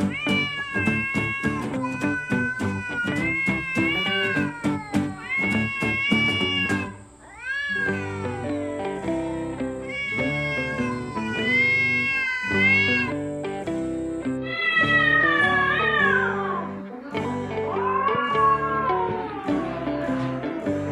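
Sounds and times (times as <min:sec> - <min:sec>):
cats meowing: 0:00.0 - 0:20.9
background music: 0:07.9 - 0:20.9.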